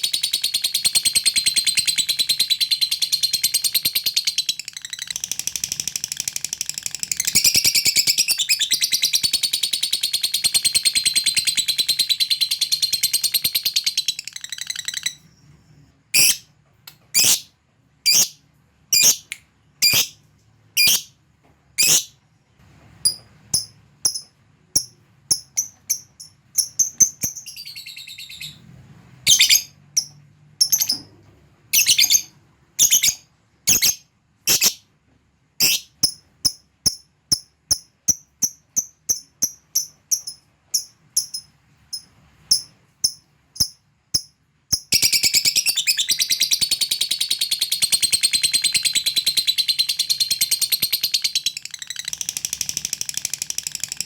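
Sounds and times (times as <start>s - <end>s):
sharp bird chirps: 0.0s - 15.5s, 16.2s - 16.5s, 17.2s - 20.2s, 20.8s - 21.2s, 23.1s - 28.6s, 29.3s - 31.1s
bird chattering trill: 18.1s - 18.4s.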